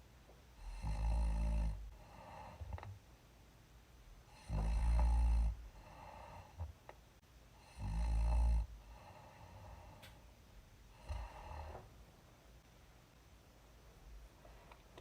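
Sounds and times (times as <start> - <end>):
woman snoring: 0.6 - 2.9, 4.3 - 6.7, 7.6 - 10.1, 11.0 - 11.9
woman breathing: 8.8 - 10.3, 10.9 - 12.0.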